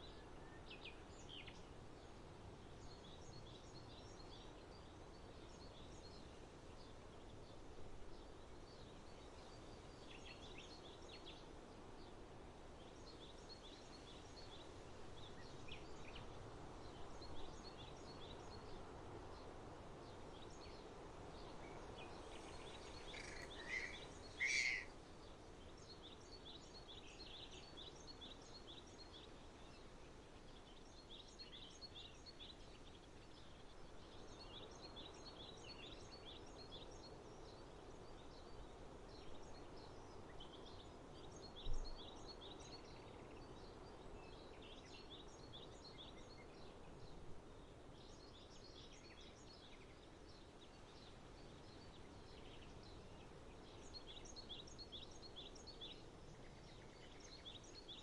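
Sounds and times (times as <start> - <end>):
small birds chirping: 12.8 - 58.0
two-part bird call: 23.2 - 24.9.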